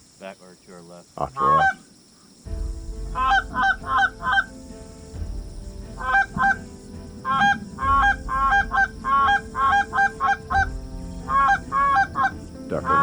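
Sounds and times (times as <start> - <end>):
geese honking: 1.2 - 1.9, 3.2 - 5.1, 5.9 - 13.0.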